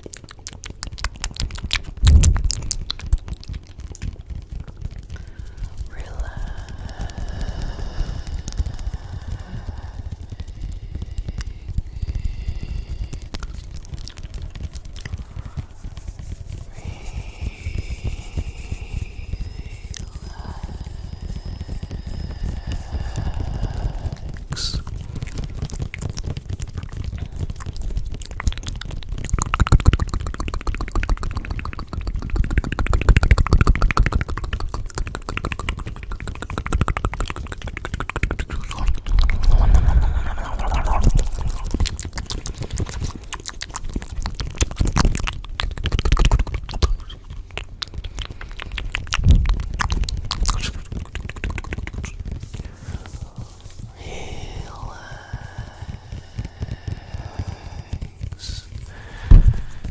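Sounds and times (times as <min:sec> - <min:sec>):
fine crackling and clicking: 0:00.0 - 0:53.8
low rumbling: 0:05.1 - 0:25.7, 0:38.8 - 0:42.6.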